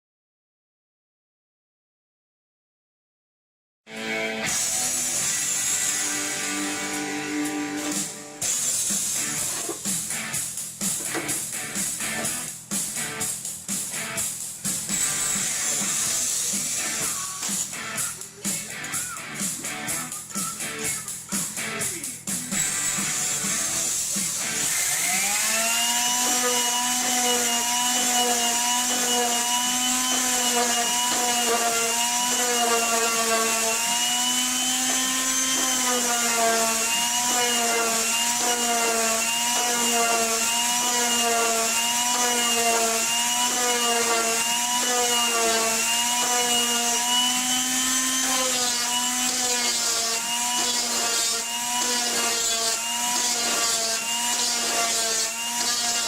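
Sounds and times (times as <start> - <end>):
electric wood router whine: 3.9 - 10.0, 14.7 - 18.0, 22.6 - 56.0.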